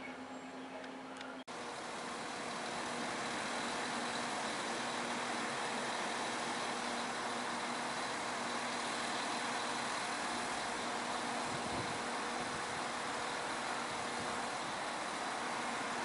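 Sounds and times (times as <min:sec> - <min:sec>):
diesel train passing: 0:01.5 - 0:16.0.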